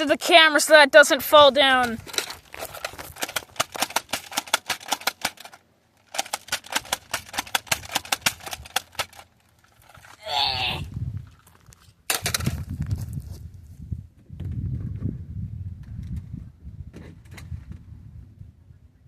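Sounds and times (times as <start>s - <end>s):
toy blaster firing clicks: 2.1s - 9.3s
voice-like falling sound: 10.2s - 10.9s.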